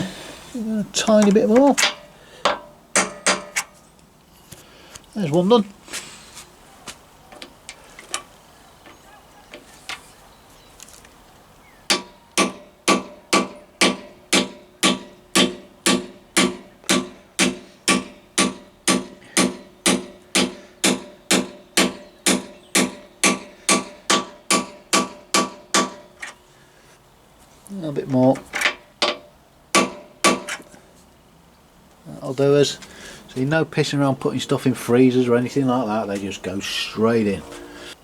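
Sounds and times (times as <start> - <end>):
hammer blows on metal: 11.9 - 26.0.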